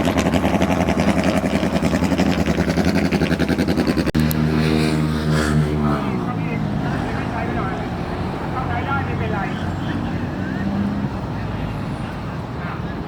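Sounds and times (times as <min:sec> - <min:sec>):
speedboat engine running: 0:00.0 - 0:13.0.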